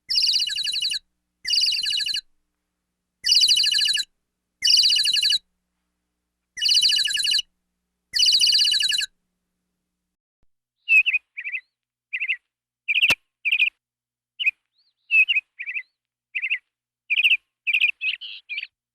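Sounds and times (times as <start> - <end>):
buzzy bird trills: 0.1 - 2.3, 3.2 - 5.4, 6.6 - 7.5, 8.2 - 9.1
short bird chirps: 0.1 - 2.3, 3.2 - 5.4, 6.6 - 7.5, 8.1 - 9.1, 10.8 - 13.8, 14.4 - 18.8.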